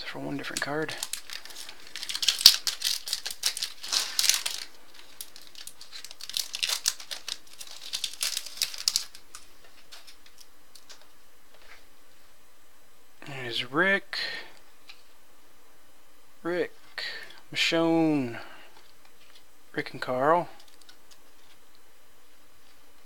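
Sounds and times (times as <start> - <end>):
foil wrapper crinkling: 0.4 - 11.1
cards snapping: 0.5 - 11.1.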